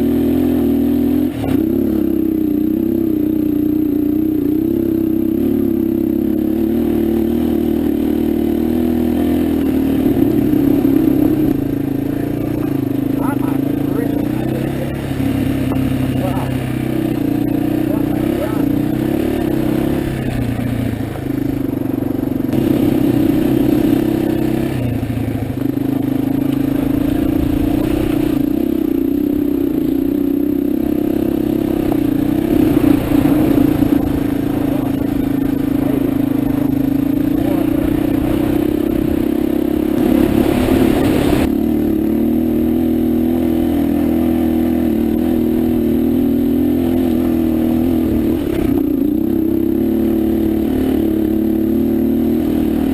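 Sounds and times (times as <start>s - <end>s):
motorcycle engine under load: 0.0s - 52.9s.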